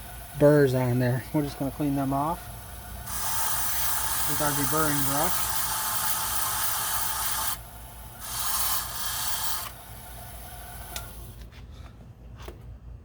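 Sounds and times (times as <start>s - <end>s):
key rasping on spinning brush: 3.1s - 7.6s.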